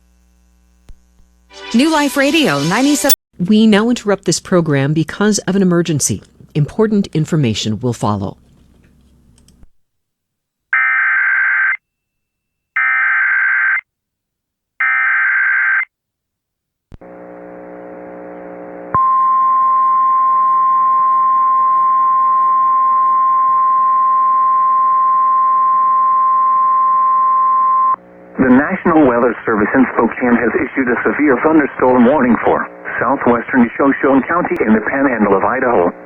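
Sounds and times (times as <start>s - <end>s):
steady attention tone: 17.0s - 36.0s.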